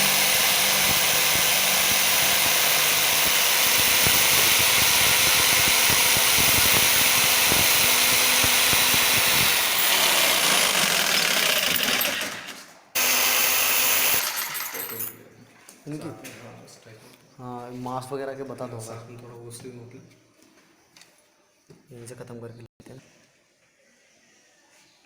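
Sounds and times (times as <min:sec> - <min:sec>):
electric jigsaw cutting wood: 0:00.0 - 0:15.0.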